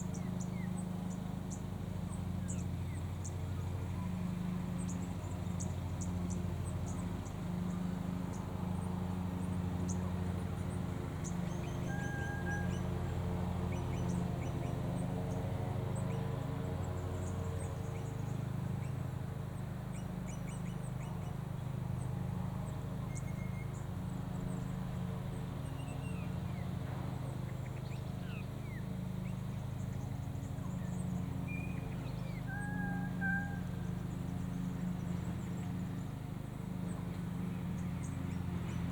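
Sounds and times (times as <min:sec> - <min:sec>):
lawnmower engines droning: 0:00.0 - 0:38.9
birds chirping and whistling: 0:11.4 - 0:12.9, 0:30.6 - 0:34.0.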